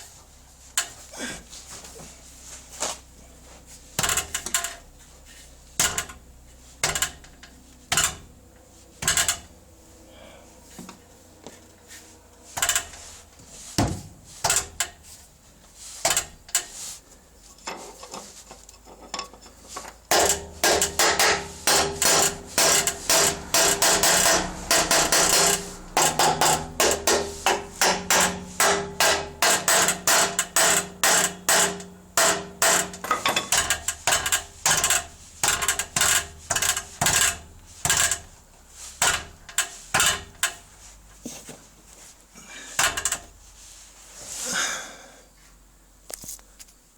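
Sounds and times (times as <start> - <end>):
exhaust rattling metallic clanks: 0.7 - 10.2, 11.6 - 15.2, 16.0 - 16.8, 18.8 - 41.2, 42.7 - 43.5
engine running: 20.1 - 38.6.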